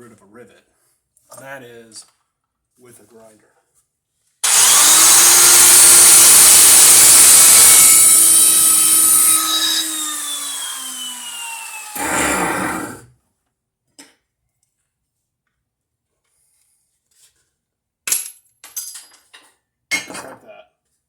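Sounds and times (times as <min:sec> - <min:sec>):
grinder cutting metal: 0:04.4 - 0:13.0
grinder spinning down whine: 0:04.4 - 0:13.0.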